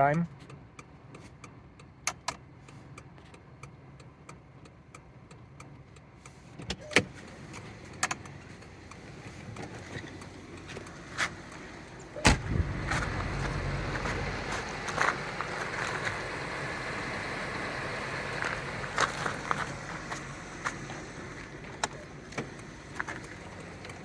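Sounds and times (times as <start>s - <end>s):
turn signal flasher ticking: 0.0s - 24.0s
rumbling noise: 11.4s - 21.8s
heavy thump: 12.2s - 15.1s.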